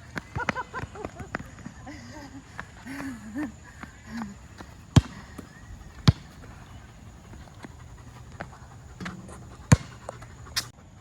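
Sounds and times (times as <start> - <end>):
basketball bouncing on hard court: 4.6 - 10.3.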